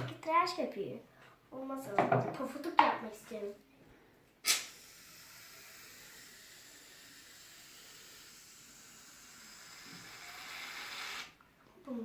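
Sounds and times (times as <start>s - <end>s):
aerosol foam spraying hiss: 4.5s - 11.3s.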